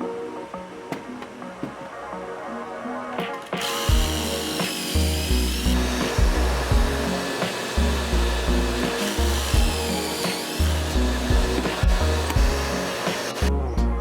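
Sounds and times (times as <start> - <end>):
background music with beat: 0.0 - 14.0
steady whirring motor: 3.5 - 13.7.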